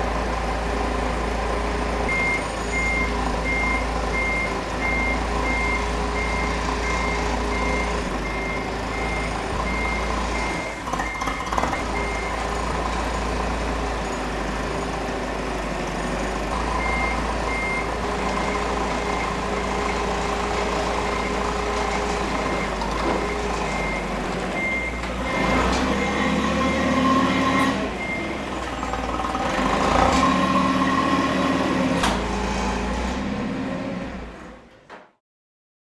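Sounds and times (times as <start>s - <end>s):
forklift running: 0.0s - 34.9s
reversing alarm beeps: 2.1s - 12.3s, 16.8s - 20.0s, 23.3s - 28.4s.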